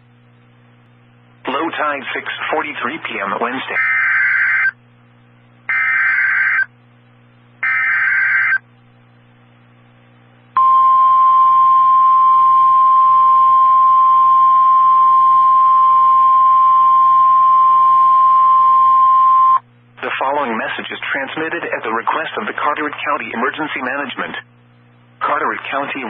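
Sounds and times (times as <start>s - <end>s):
steady alarm tone: 3.7s - 4.8s, 5.7s - 6.7s, 7.6s - 8.6s, 10.6s - 19.6s.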